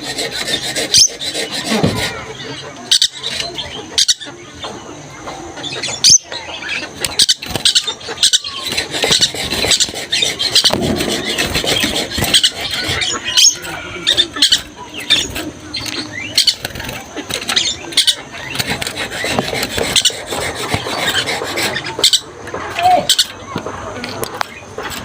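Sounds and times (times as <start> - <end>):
parrot chattering: 5.6 - 22.4.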